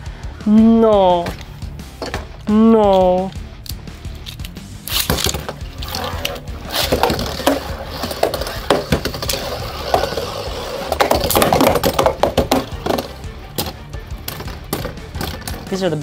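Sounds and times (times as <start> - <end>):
tops clashing with clicking hits: 3.1 - 15.8
spinning tops whirring: 4.4 - 15.8.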